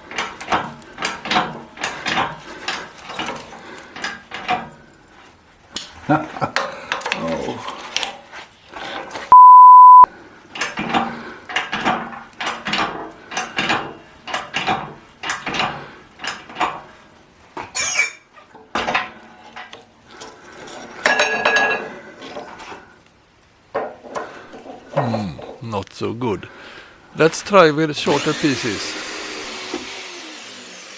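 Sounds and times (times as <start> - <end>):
electronic beep: 9.4 - 10.1.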